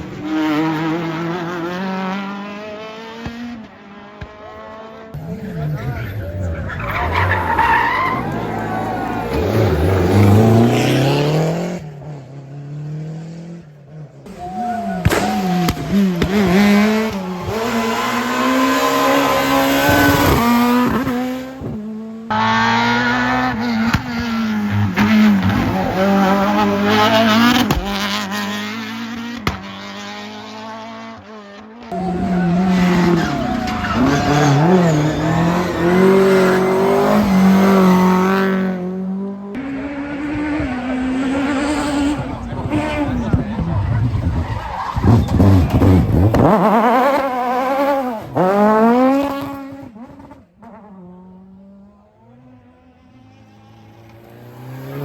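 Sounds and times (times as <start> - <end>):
rally car engines revving: 0.0 - 55.0
tyre squeal: 31.9 - 37.3, 44.0 - 46.4.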